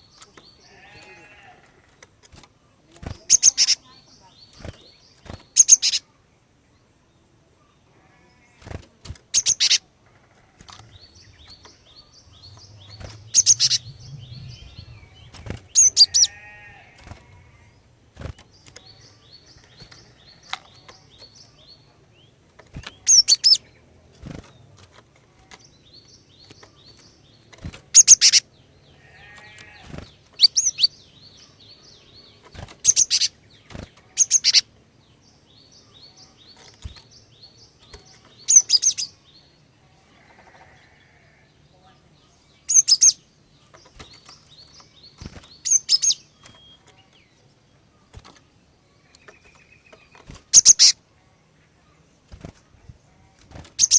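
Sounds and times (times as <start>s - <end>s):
harsh buzzy bird call: 10.5s - 17.9s.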